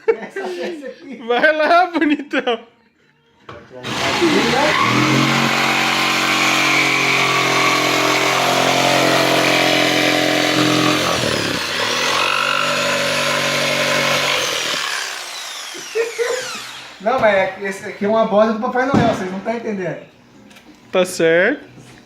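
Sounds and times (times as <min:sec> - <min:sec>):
electric jigsaw cutting wood: 0:03.8 - 0:17.0.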